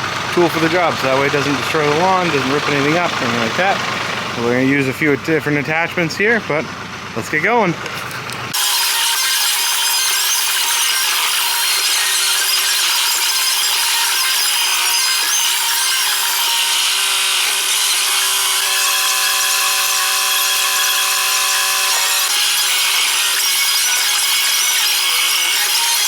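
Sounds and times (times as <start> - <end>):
tractor engine drone: 0.0 - 8.6.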